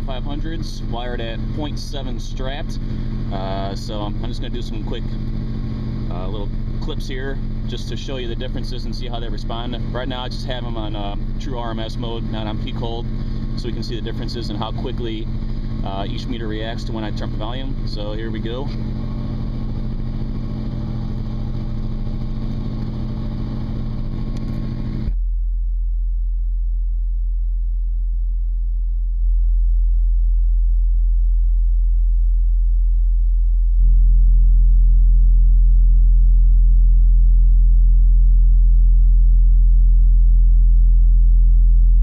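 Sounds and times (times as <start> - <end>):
rumble with hiss: 0.0 - 25.2
subwoofer low bass tone: 0.0 - 42.0.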